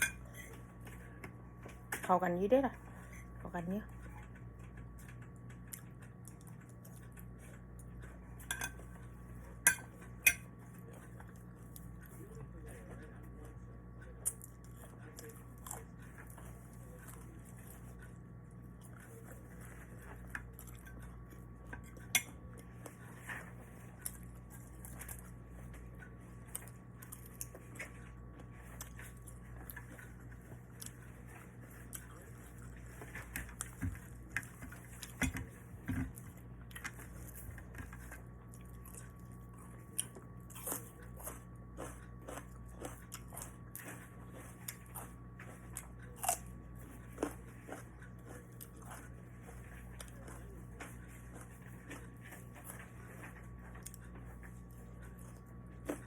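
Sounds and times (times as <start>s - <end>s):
steady low hum: 0.0s - 56.0s
utensils clinking against dishes: 8.4s - 8.9s
person chewing and biting: 36.1s - 56.0s.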